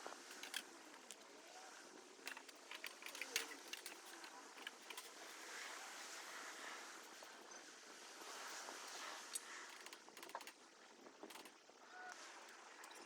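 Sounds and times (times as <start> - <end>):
metal frame pieces clinking: 0.3 - 1.2, 2.2 - 5.4.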